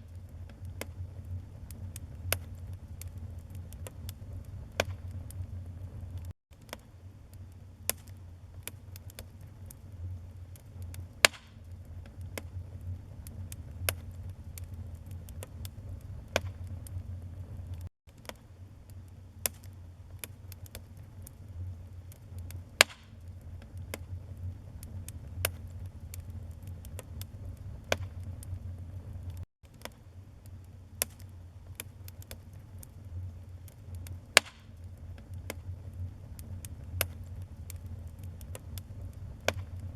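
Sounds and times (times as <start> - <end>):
low steady rumble: 0.0 - 39.9
wood fire crackling and popping: 0.0 - 39.9.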